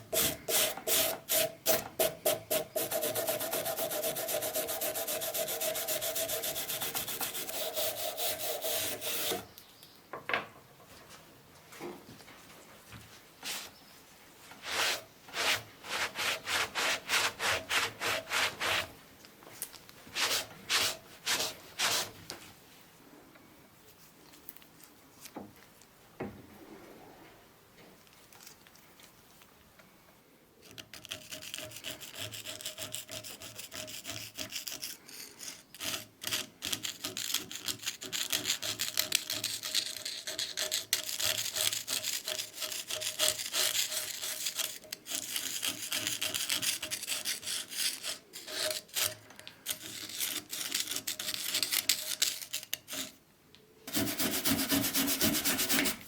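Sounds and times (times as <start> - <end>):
tool scraping on wood: 0.0 - 9.5, 14.6 - 18.9, 30.9 - 53.2, 53.9 - 56.0.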